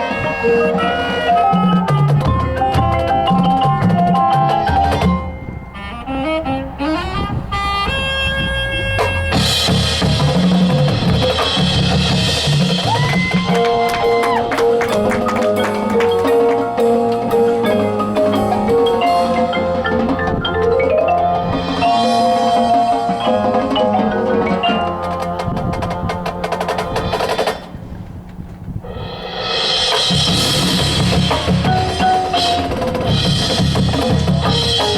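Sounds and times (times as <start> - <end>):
mallet percussion melody: 0.0 - 6.0, 8.9 - 27.6, 29.6 - 34.9
dense drum strokes: 8.4 - 34.9.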